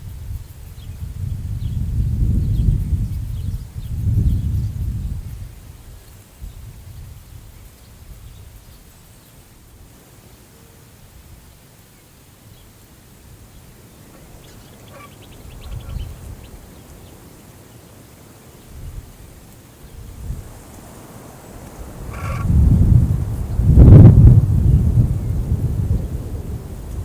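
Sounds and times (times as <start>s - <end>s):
wind gusting against microphone: 0.0s - 9.0s, 13.2s - 27.0s
bird chattering call: 14.1s - 16.4s, 22.1s - 22.5s.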